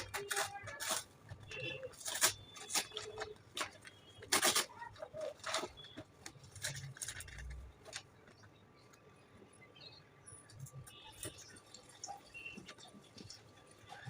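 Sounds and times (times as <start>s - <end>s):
packaging rustling and crinkling: 0.0s - 8.5s.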